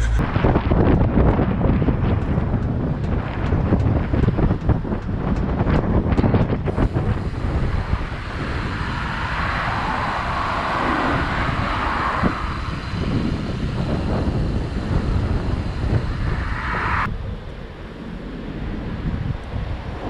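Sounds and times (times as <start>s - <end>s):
rolling road noise: 0.0s - 20.0s
wind buffeting microphone: 0.0s - 20.0s
broad rushing sound: 5.5s - 20.0s.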